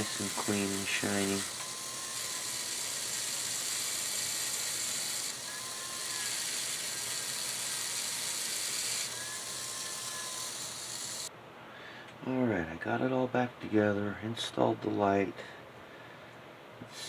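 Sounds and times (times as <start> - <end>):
faint thin whine: 0.0 - 11.3.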